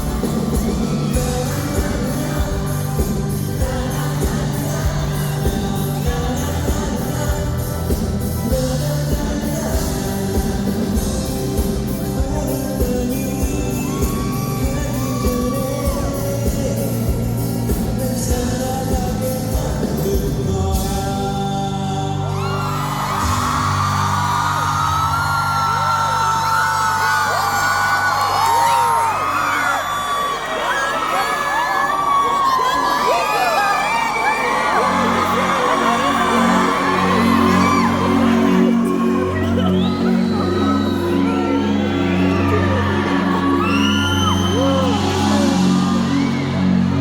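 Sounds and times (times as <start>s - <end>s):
man singing: 0.0s - 23.6s, 34.6s - 47.0s
band playing pop with beat: 0.0s - 29.1s, 34.6s - 47.0s
audience shouting: 22.4s - 47.0s.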